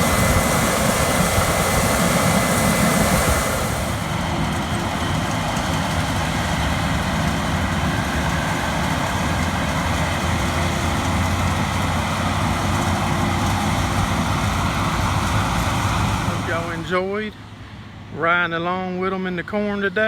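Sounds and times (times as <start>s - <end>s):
machine whining tones: 0.0s - 4.7s
combine engine hum: 0.0s - 20.0s.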